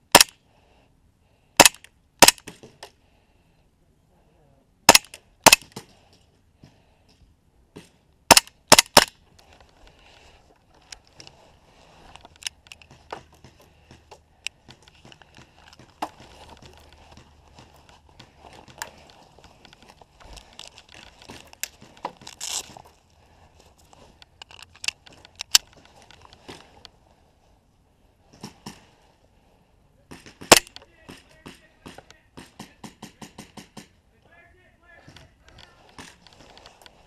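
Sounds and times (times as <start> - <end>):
airsoft pistol shots: 1.6 - 2.5, 4.9 - 5.7, 30.4 - 30.7
rustling of players moving: 9.2 - 27.6, 35.0 - 37.0.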